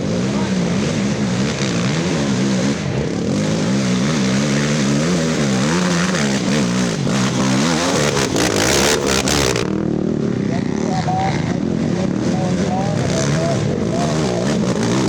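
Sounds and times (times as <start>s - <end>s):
atv engines revving: 0.0s - 15.0s
engine crackles: 0.0s - 15.0s.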